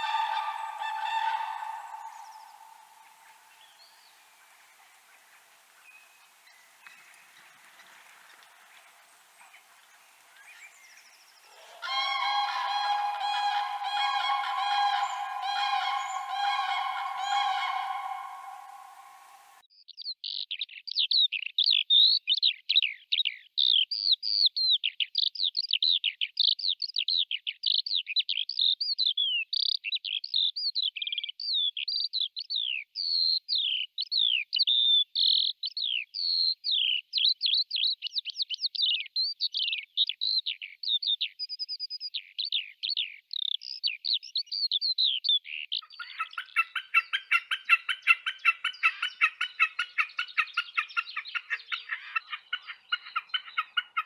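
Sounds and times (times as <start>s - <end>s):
songbird singing: 0.0s - 54.0s
bird rattling call: 11.5s - 19.6s.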